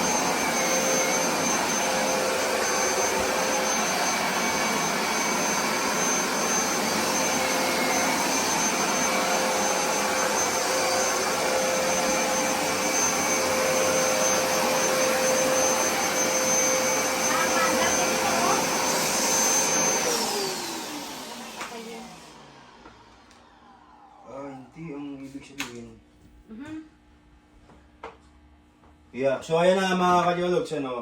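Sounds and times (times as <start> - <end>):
carpet cleaner running: 0.0 - 24.6.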